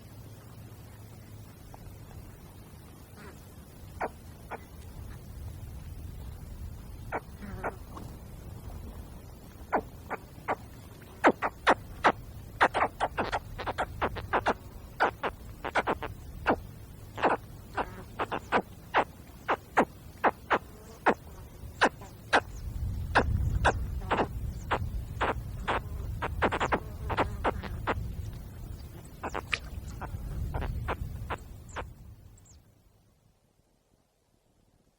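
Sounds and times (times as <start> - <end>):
baby caiman sharp calls: 11.2 - 16.6, 17.2 - 21.2, 23.2 - 28.0, 29.2 - 29.7.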